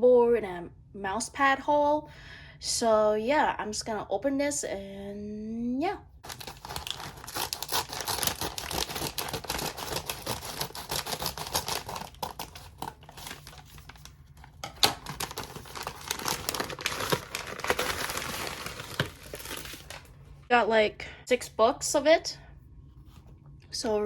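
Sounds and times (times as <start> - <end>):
packaging snapping: 6.2 - 20.1
packaging crinkling: 6.2 - 20.3.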